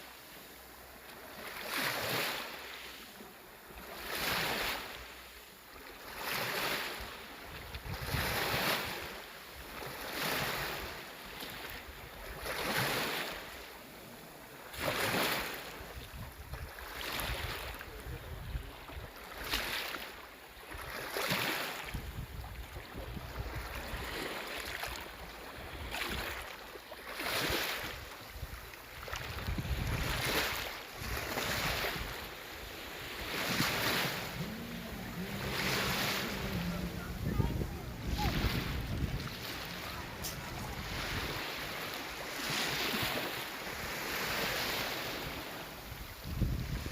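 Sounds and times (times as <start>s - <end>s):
sea waves washing onto shore: 0.0s - 46.9s
wind rumble on microphone: 7.5s - 9.1s, 15.8s - 19.2s, 21.8s - 24.2s, 28.0s - 42.6s, 45.1s - 46.9s.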